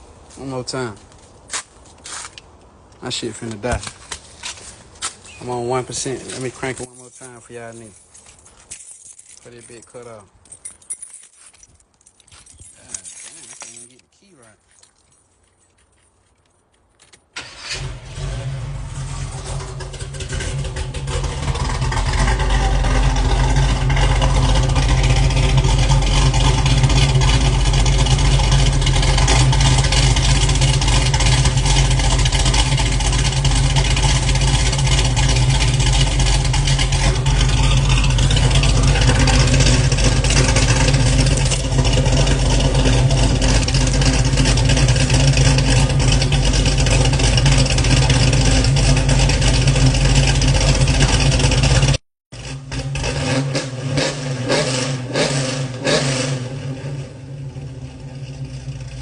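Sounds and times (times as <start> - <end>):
car engine starting and idling: 17.4 - 59.0.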